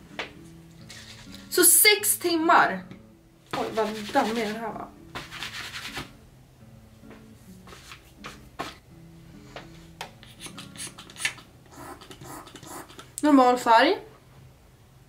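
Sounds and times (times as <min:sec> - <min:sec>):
quiet background music: 0:00.0 - 0:15.0.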